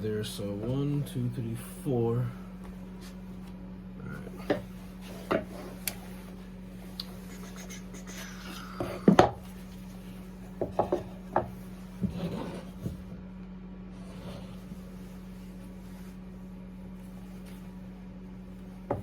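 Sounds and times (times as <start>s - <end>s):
steady low hum: 0.0s - 19.0s
wood scraping and rubbing: 4.3s - 8.2s, 8.8s - 13.1s, 14.0s - 16.1s.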